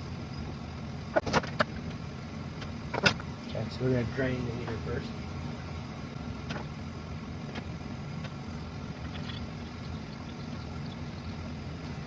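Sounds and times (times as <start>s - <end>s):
water draining into a bucket: 8.9s - 12.0s.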